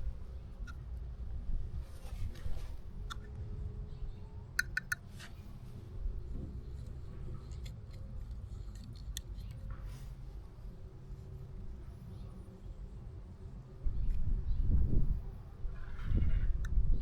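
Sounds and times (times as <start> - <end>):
plastic pipe clicks and taps: 4.6 - 5.0.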